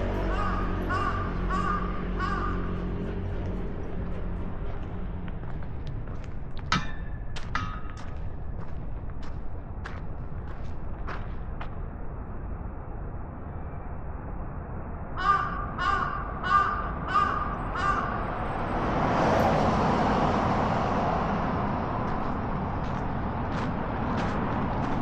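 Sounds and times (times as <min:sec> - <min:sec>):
bird calling: 0:00.0 - 0:02.9
broad rush of noise: 0:00.0 - 0:25.0.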